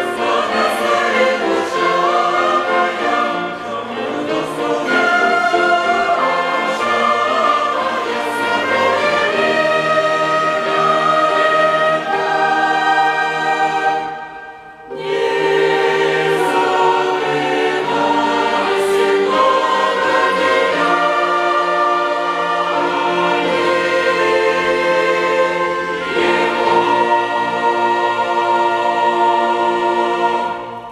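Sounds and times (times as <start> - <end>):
mixed choir singing: 0.0 - 30.9.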